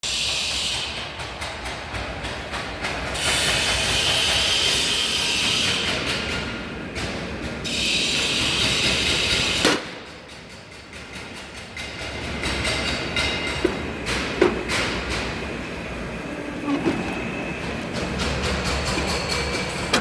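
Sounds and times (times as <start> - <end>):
paving vibrating machine rattling: 10.4 - 20.0.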